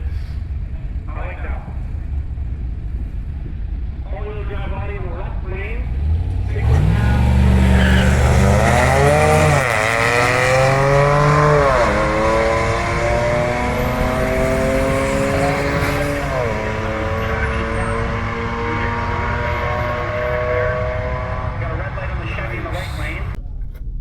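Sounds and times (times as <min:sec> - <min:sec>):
race cars accelerating hard: 0:05.9 - 0:23.4.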